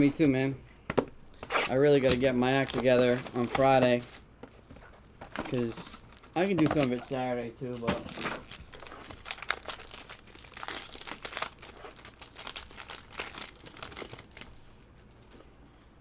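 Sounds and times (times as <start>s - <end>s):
wrapper crinkling: 5.5s - 14.9s.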